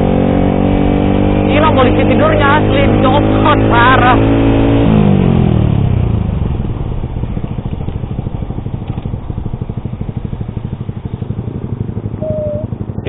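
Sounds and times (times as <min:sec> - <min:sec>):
motorcycle engine idling: 0:05.9 - 0:13.0.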